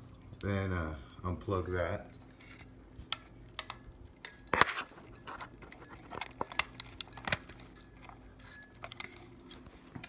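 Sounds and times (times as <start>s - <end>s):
plastic and metal parts handled: 2.2s - 10.0s.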